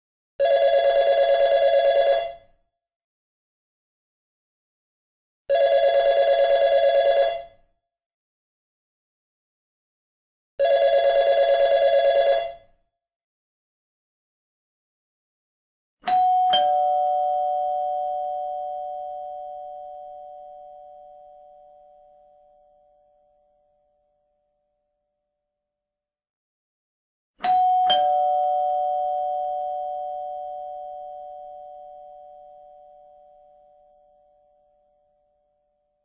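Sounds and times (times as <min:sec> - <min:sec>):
two-note doorbell chime: 0:16.1 - 0:21.0, 0:27.4 - 0:33.2.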